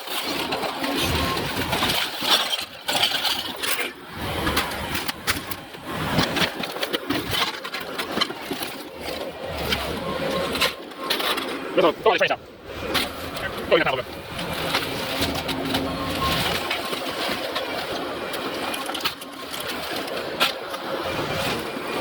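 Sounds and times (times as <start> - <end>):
demolition debris clattering: 0.0 - 22.0
heavy equipment engine running: 9.0 - 20.2.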